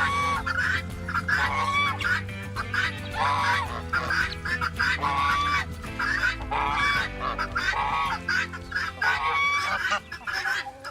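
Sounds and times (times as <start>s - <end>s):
geese honking: 0.0s - 10.9s
music of low sustained notes: 0.0s - 10.9s.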